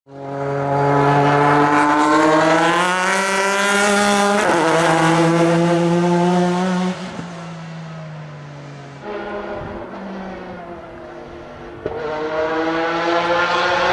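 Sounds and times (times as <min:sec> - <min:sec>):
racing engine accelerating: 0:00.1 - 0:07.4, 0:09.0 - 0:13.9.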